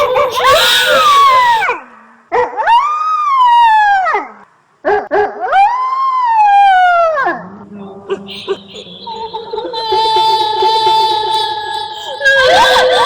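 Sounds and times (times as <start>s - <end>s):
girl wailing ghostly cries: 0.0s - 1.8s, 8.1s - 13.0s.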